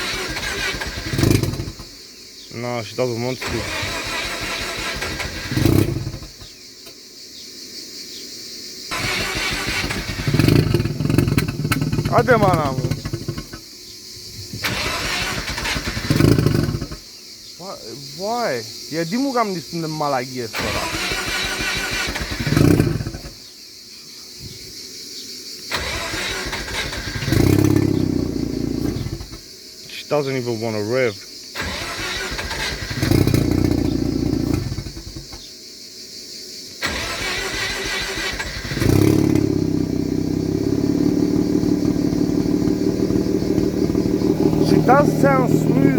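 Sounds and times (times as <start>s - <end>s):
car engine sputtering and stalling: 0.0s - 1.9s, 3.3s - 6.5s, 8.9s - 13.7s, 14.5s - 17.0s, 20.6s - 23.4s, 25.7s - 29.4s, 31.6s - 35.5s, 36.8s - 45.9s
engine cranking and firing up: 0.0s - 2.0s, 3.2s - 6.6s, 8.9s - 13.7s, 14.3s - 17.1s, 20.5s - 23.4s, 25.7s - 29.5s, 31.6s - 35.5s, 36.8s - 45.9s.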